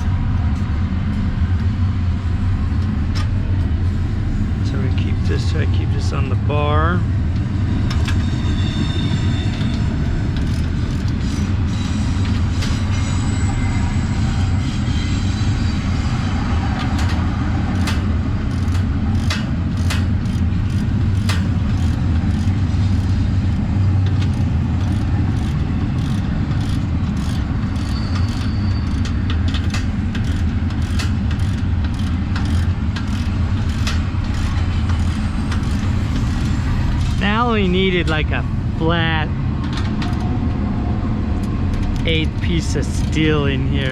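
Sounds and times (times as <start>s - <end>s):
train rumbling: 0.0s - 43.9s
wheels clicking over rail joints: 7.3s - 13.6s, 16.4s - 38.3s, 39.5s - 43.9s
faint high wheel squeal: 8.0s - 10.1s, 11.2s - 16.6s, 27.6s - 29.3s.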